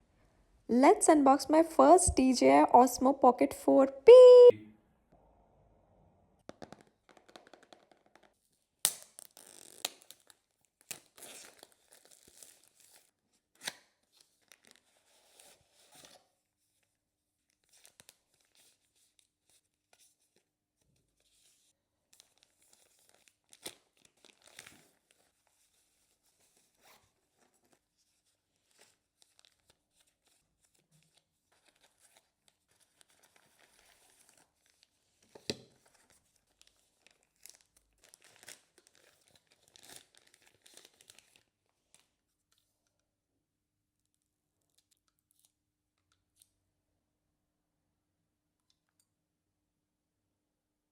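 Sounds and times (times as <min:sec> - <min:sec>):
packaging rustling and crinkling: 0:22.2 - 0:25.7, 0:28.6 - 0:42.1.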